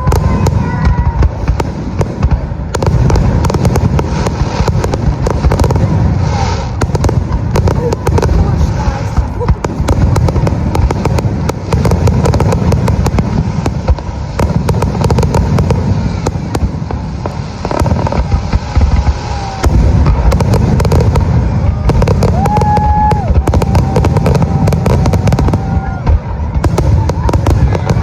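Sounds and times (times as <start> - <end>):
fireworks crackling: 0.0 - 28.0.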